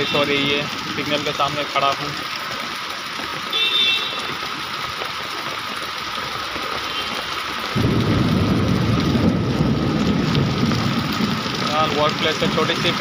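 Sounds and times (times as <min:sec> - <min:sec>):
heavy rain: 0:00.0 - 0:13.0
loud deep noise: 0:07.8 - 0:12.2.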